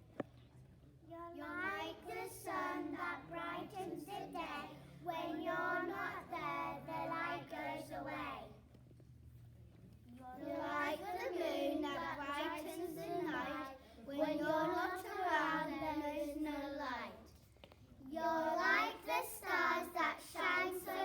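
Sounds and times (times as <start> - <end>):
children singing together: 1.6 - 8.4, 10.5 - 16.8, 18.2 - 21.0.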